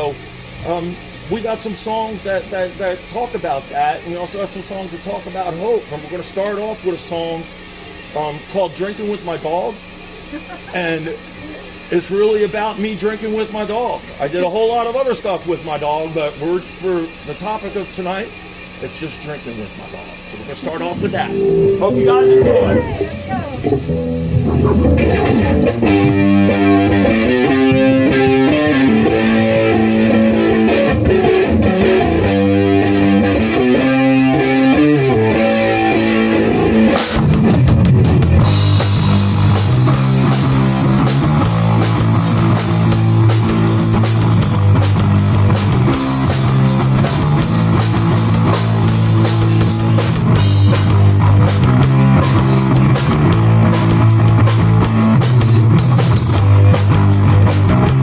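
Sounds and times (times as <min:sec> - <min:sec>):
guitar picking: 0:20.6 - 0:37.1
live rock band playing: 0:20.7 - 0:58.0.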